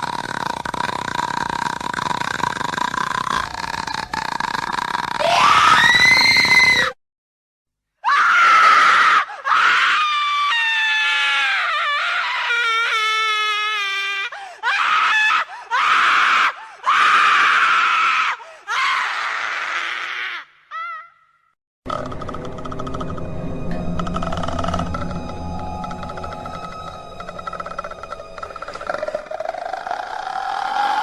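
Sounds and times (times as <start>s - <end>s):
person screaming in terror: 5.2s - 6.9s, 8.0s - 21.1s, 29.5s - 31.0s.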